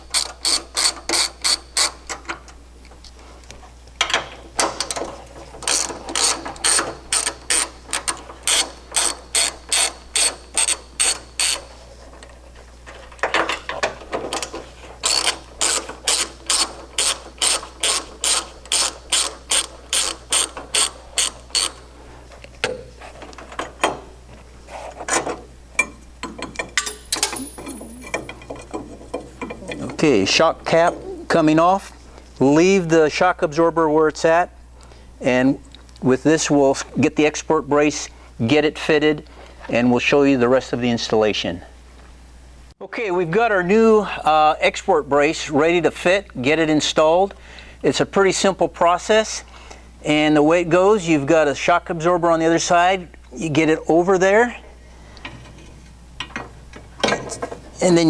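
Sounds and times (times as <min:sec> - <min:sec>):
ratchet wrench clicking: 0:00.1 - 0:02.0, 0:05.7 - 0:11.6, 0:15.0 - 0:21.8.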